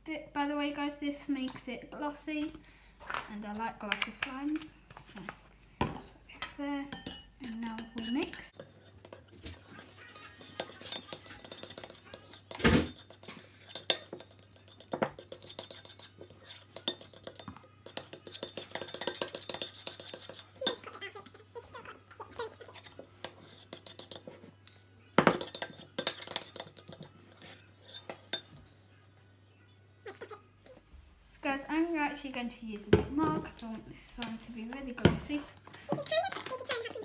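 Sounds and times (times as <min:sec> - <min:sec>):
spoon scraping and clinking bowl: 0:06.9 - 0:21.1, 0:21.7 - 0:28.6.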